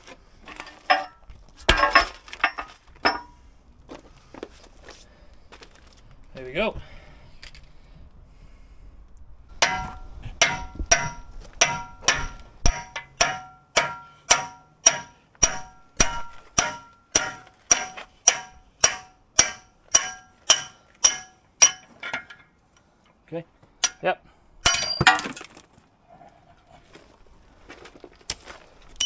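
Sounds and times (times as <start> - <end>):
hammer striking steel: 0.9 - 3.3, 9.6 - 22.4, 23.8 - 24.0, 24.6 - 25.4.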